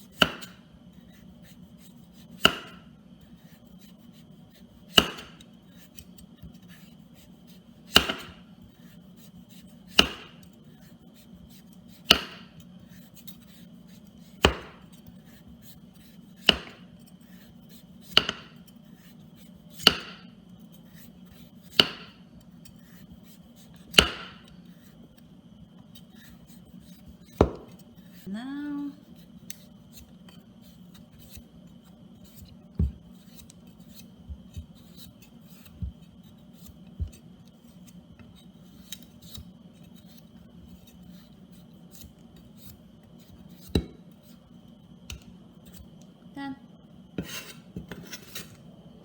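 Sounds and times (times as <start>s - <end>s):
knife knocking on cutting board: 27.4s - 27.8s.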